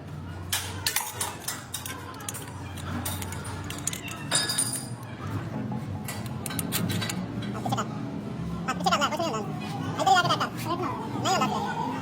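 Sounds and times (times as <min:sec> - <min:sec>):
metal tools clinking: 0:00.9 - 0:05.0.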